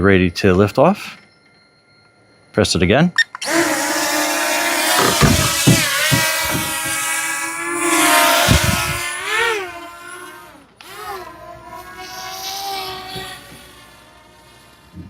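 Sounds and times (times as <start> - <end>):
drone motors whining: 3.2 - 15.0
low thumps: 4.8 - 7.3, 8.4 - 9.1.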